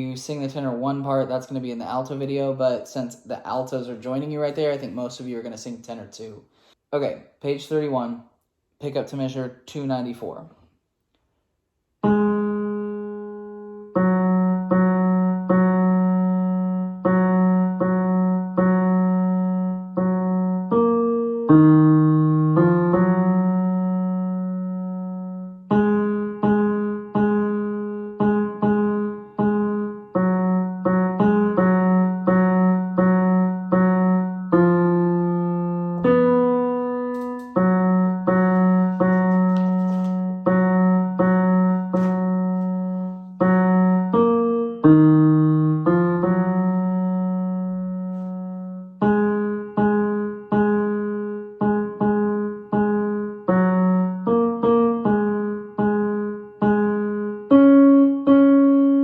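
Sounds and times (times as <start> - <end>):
piano playing single notes: 12.0 - 56.0.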